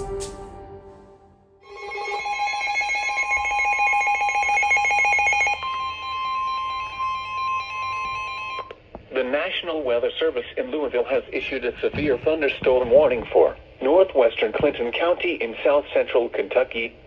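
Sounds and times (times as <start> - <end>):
intro music: 0.0 - 2.5.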